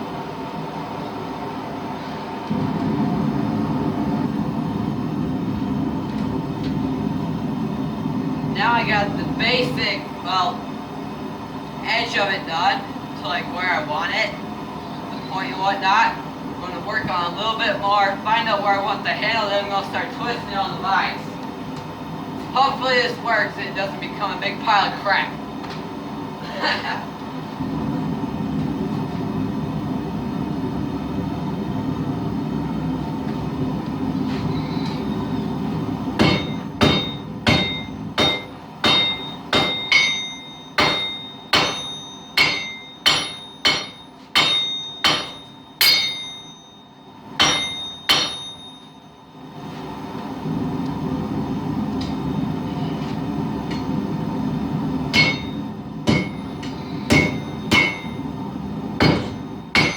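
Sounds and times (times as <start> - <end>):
hammer striking steel on anvil: 36.2 - 46.8, 47.4 - 49.0, 55.1 - 58.3, 59.0 - 59.9.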